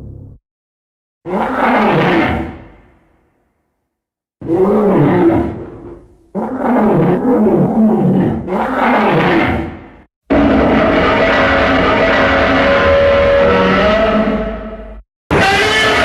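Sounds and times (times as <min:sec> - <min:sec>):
monster roar: 0:01.3 - 0:02.8, 0:06.4 - 0:16.0.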